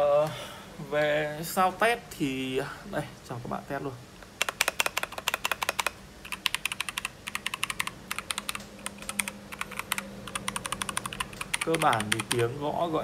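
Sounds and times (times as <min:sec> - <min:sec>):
mechanical keyboard typing: 0:04.4 - 0:12.6.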